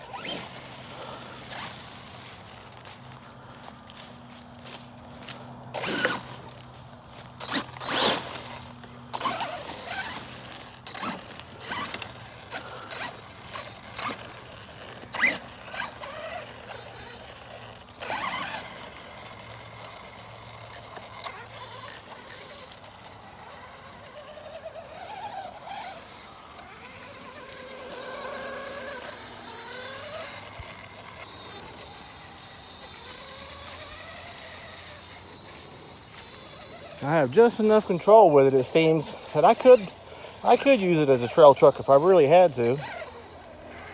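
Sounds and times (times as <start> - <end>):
electric motor whining: 0.0 - 43.9
rc truck knocking over ground: 7.4 - 35.5.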